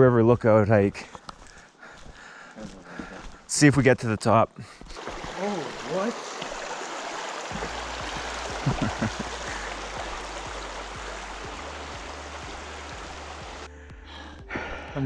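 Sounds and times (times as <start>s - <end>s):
low thumps: 7.4s - 13.7s.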